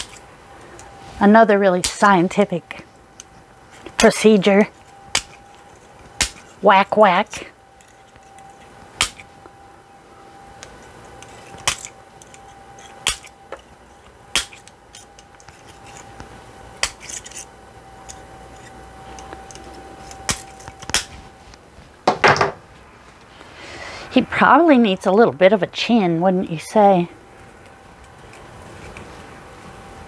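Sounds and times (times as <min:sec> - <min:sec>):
wire snips cutting wire: 0:00.0 - 0:00.2, 0:01.8 - 0:02.1, 0:03.2 - 0:06.6, 0:07.3 - 0:09.3, 0:10.6 - 0:16.1, 0:16.8 - 0:21.2
faint steady hum: 0:00.0 - 0:30.0.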